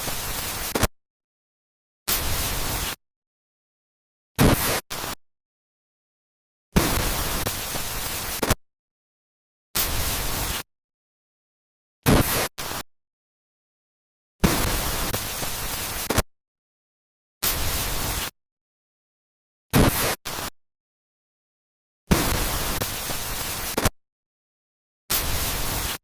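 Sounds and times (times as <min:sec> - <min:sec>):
bursts of harsh static noise: 0:00.0 - 0:00.9, 0:02.1 - 0:03.0, 0:04.4 - 0:05.2, 0:06.8 - 0:08.6, 0:09.8 - 0:10.7, 0:12.0 - 0:12.8, 0:14.4 - 0:16.3, 0:17.4 - 0:18.4, 0:22.1 - 0:23.9, 0:25.1 - 0:26.0.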